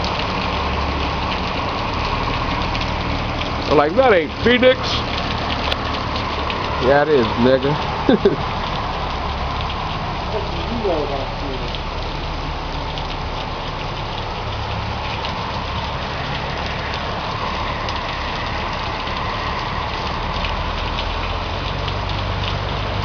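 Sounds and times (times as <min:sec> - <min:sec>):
heavy rain hissing: 0:00.0 - 0:23.0
vehicle engine humming: 0:00.0 - 0:23.0.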